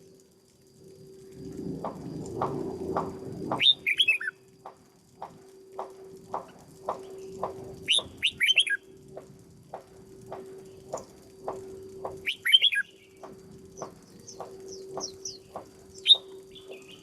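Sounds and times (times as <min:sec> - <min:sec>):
low steady hum: 0:00.0 - 0:17.0
steady ticking: 0:00.0 - 0:17.0
bird singing sliding notes: 0:03.6 - 0:04.4, 0:07.0 - 0:08.8, 0:12.2 - 0:17.0.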